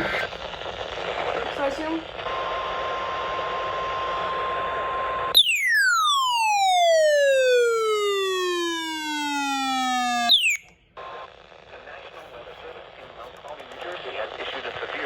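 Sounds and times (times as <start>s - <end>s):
radio static: 0.0s - 4.6s, 11.0s - 15.0s
warning alarm tone: 5.4s - 10.7s.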